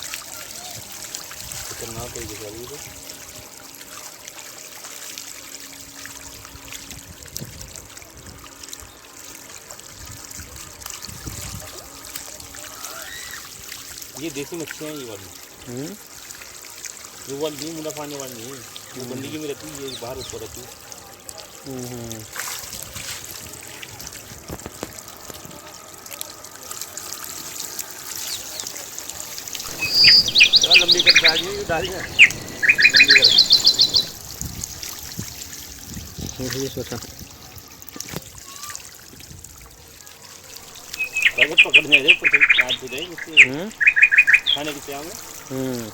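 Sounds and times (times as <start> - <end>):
small splashes at water surface: 0.0 - 45.9
water trickling: 0.0 - 45.9
low gusty rumbles: 29.5 - 35.4.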